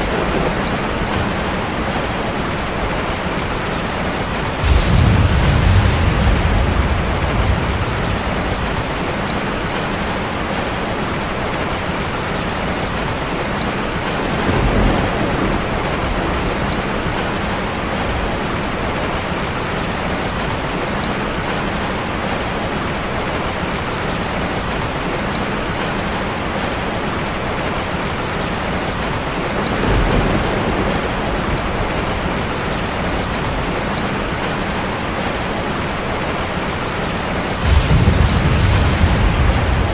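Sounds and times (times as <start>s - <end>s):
low rolls of thunder: 0.0s - 11.0s, 14.0s - 19.1s, 29.5s - 34.5s, 37.5s - 39.9s
heavy rain: 0.0s - 39.9s.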